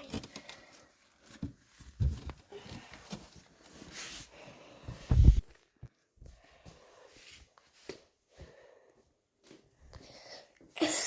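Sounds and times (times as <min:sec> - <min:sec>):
rustling: 0:00.0 - 0:06.0.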